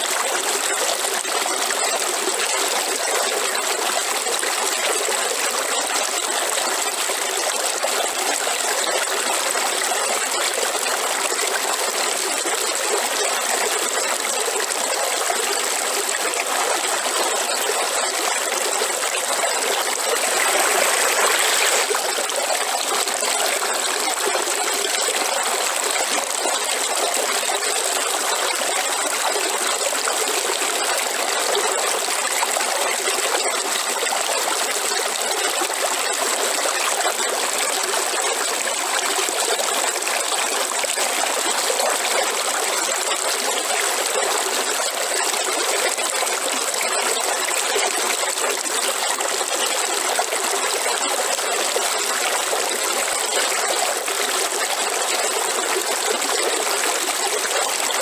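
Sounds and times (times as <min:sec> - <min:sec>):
river water flowing: 0:14.4 - 0:32.3.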